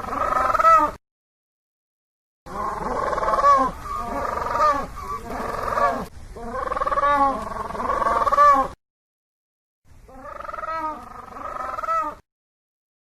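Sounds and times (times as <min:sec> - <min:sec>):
penguins braying cries: 0:02.5 - 0:06.1, 0:10.2 - 0:12.2.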